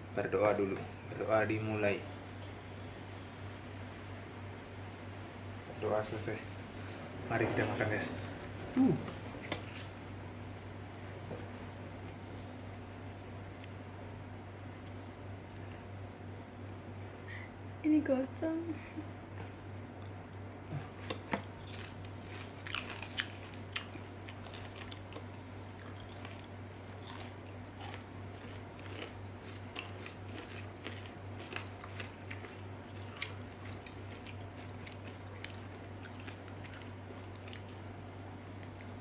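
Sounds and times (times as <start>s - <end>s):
crunching and chewing chips: 19.3s - 39.0s.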